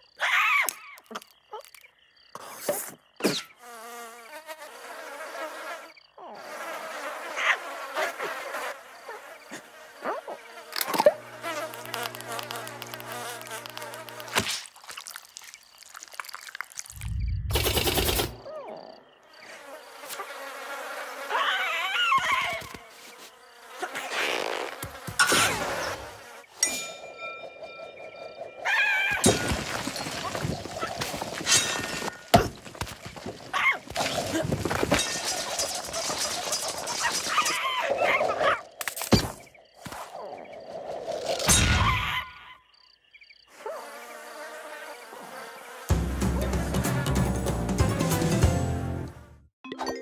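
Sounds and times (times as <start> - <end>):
buzzing insect-like drone: 3.6 - 14.5.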